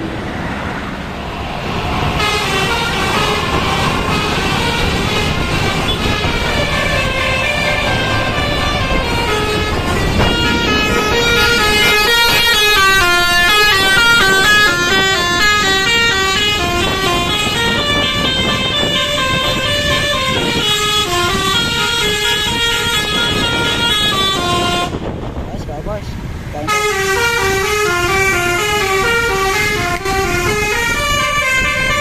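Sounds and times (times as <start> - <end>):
low rumble: 0.0 - 17.2
bus multi-tone horn tune: 2.1 - 25.3, 26.6 - 32.0.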